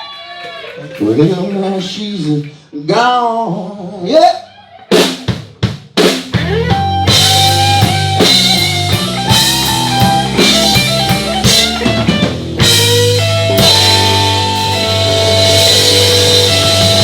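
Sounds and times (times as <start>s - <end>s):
drum kit steady beat: 4.9s - 17.0s
guitar line: 6.4s - 17.0s
sustained bass notes: 6.4s - 17.0s.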